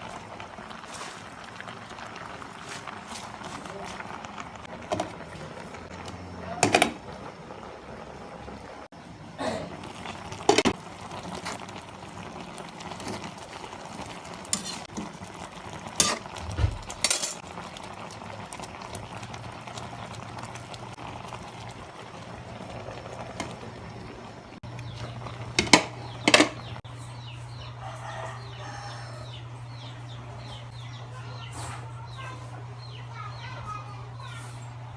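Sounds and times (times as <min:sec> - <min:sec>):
utensils clinking on pot and dishes: 0:04.8 - 0:07.1, 0:10.4 - 0:11.6, 0:14.4 - 0:15.1, 0:15.9 - 0:17.5, 0:25.0 - 0:27.7.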